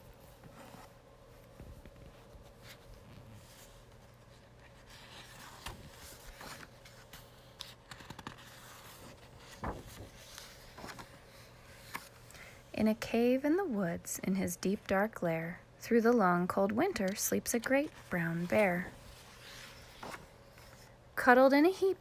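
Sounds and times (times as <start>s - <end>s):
paper book rustling: 0.0s - 12.6s, 16.9s - 20.9s
low steady hum: 0.0s - 22.0s.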